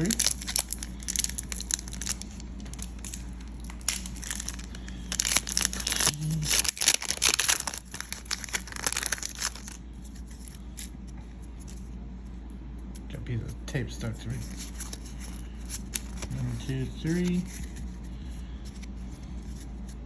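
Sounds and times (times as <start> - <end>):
foil wrapper tearing and crinkling: 0.0 - 10.9, 14.3 - 17.8.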